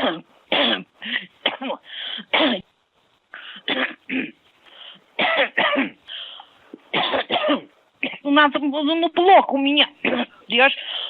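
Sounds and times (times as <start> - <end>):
woman coughing over telephone: 0.0 - 2.7, 3.6 - 4.4, 5.2 - 6.1, 7.0 - 8.3, 10.0 - 10.4
breathy gasps: 1.0 - 2.3, 3.3 - 3.7.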